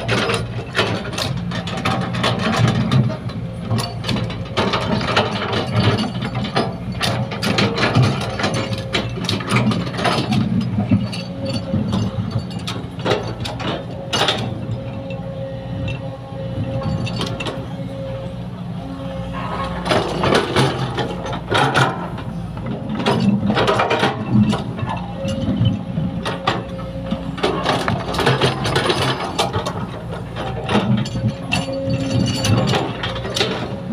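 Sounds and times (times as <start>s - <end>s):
excavator bucket clanking: 0.0s - 33.9s
excavator diesel engine running: 0.0s - 33.9s.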